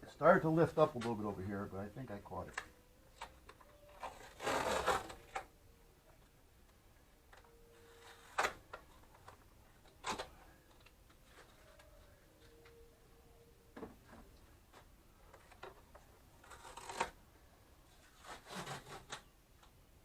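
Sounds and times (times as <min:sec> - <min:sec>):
rustling scrape: 0:04.0 - 0:05.4, 0:17.9 - 0:19.3.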